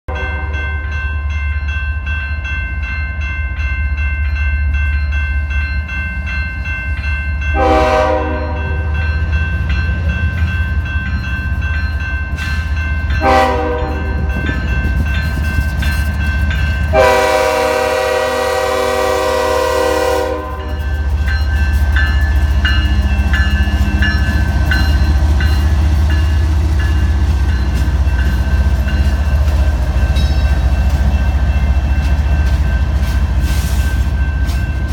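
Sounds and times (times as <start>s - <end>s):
train horn blasts: 0.1s - 0.8s, 7.5s - 9.0s, 13.2s - 14.4s, 16.9s - 20.9s
diesel locomotive rumbling: 0.1s - 34.9s.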